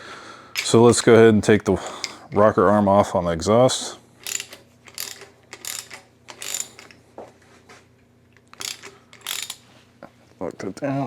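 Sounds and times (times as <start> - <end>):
ratchet wrench clicking: 4.2 - 7.0, 8.5 - 9.6.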